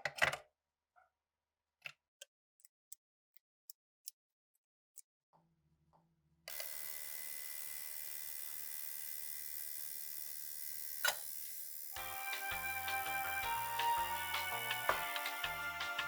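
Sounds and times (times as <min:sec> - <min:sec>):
power tool whining: 0:06.5 - 0:16.0
music: 0:12.0 - 0:16.0.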